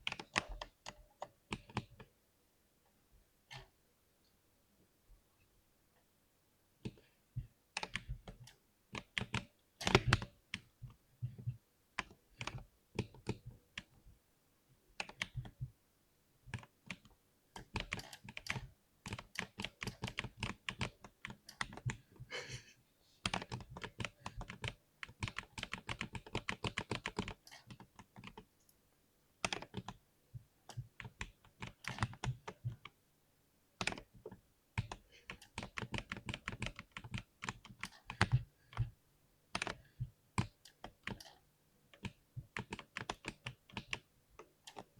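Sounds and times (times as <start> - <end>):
keyboard typing: 0.0 - 2.0, 9.0 - 10.7, 15.0 - 15.6, 16.5 - 22.0, 23.2 - 28.5, 29.4 - 30.0, 30.7 - 32.9, 33.8 - 41.4, 42.0 - 44.9.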